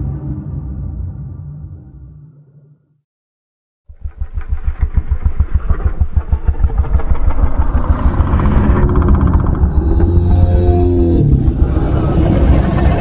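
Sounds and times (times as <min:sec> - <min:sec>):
low engine-like pulsing: 0:03.9 - 0:13.0.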